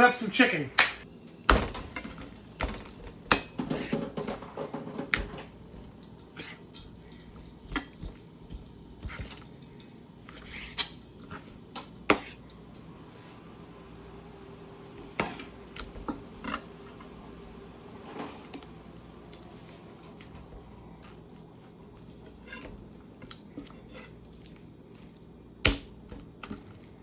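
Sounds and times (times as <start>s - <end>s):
kitchen utensils clattering: 1.4s - 12.6s.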